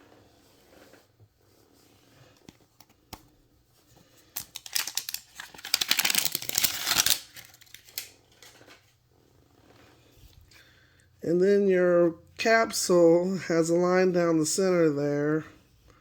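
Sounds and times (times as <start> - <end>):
handling rustles and taps: 2.3 - 5.8
packaging tearing: 4.3 - 8.8.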